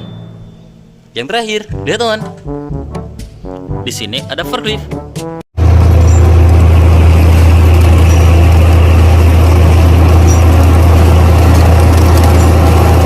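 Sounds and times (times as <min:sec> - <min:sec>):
forklift engine idling: 0:05.6 - 0:13.0.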